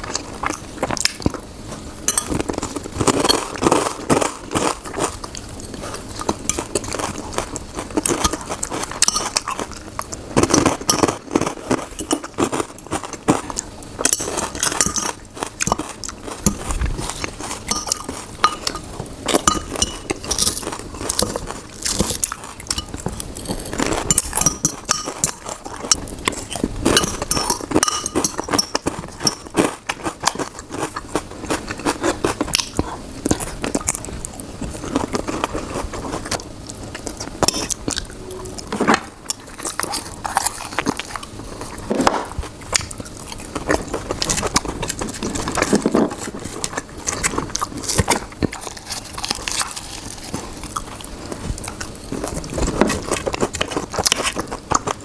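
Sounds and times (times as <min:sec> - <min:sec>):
biting and chewing: 0:00.0 - 0:55.0
cutlery clinking on a plate: 0:08.2 - 0:09.5, 0:17.7 - 0:21.4, 0:22.7 - 0:26.1, 0:26.9 - 0:29.6.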